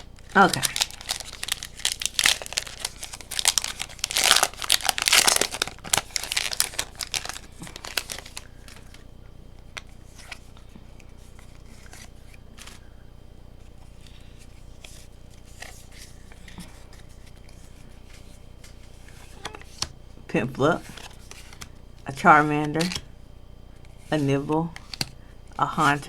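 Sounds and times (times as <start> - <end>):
foil wrapper tearing and crinkling: 0.0 - 9.0.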